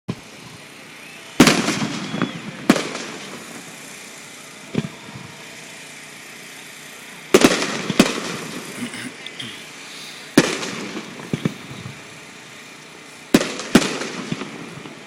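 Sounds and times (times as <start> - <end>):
fireworks bursting with bangs: 0.1 - 8.9, 9.7 - 15.0.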